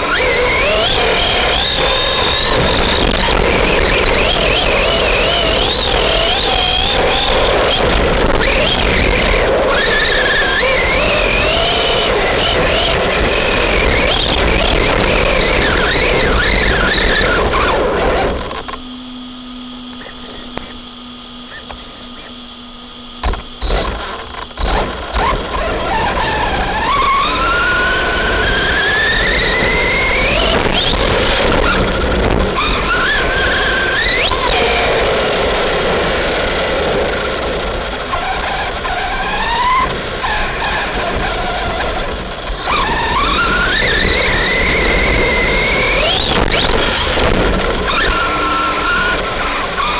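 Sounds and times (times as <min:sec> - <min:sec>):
electric motor whining: 0:00.0 - 0:49.9
steady rushing noise: 0:00.0 - 0:49.9.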